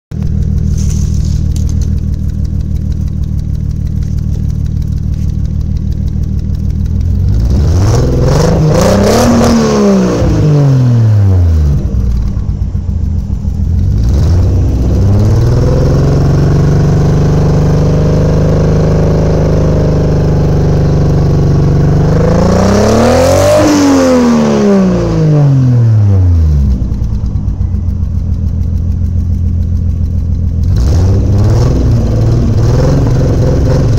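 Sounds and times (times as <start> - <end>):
car engine idling and revving: 0.1 - 33.9.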